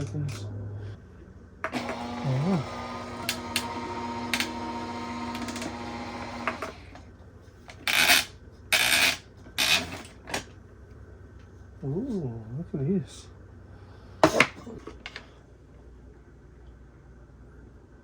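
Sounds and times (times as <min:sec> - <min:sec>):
coffee grinder motor humming: 0:01.7 - 0:07.0.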